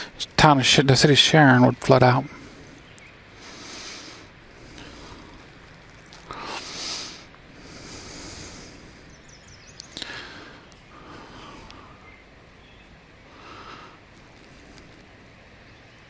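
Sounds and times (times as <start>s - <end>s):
person breathing: 2.2s - 12.3s, 13.2s - 15.0s
faint clicks: 2.8s - 3.1s, 4.7s - 6.6s, 9.7s - 12.2s, 13.9s - 15.4s.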